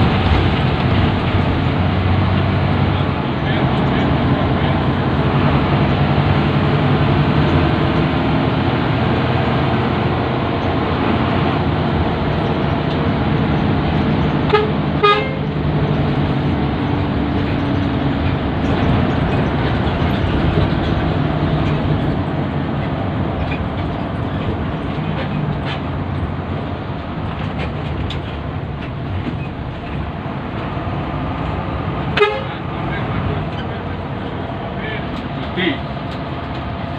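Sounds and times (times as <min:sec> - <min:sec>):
bus engine and road noise: 0:00.0 - 0:36.9
bus horn toots: 0:14.4 - 0:15.6, 0:32.1 - 0:32.8.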